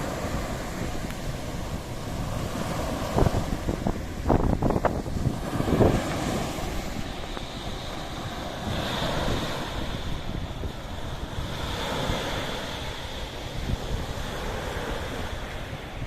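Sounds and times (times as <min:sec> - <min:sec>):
sea waves washing: 0:00.0 - 0:16.0
wind buffeting microphone: 0:00.0 - 0:16.0.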